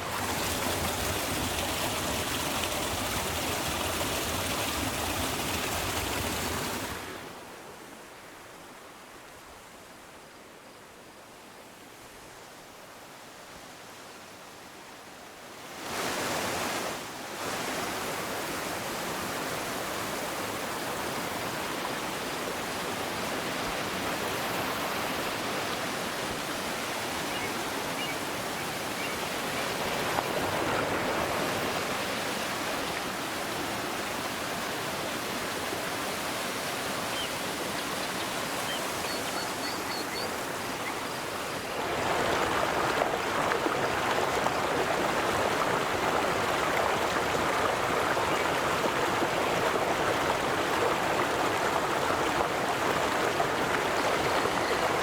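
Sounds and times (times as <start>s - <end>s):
river water flowing: 0.0s - 55.0s.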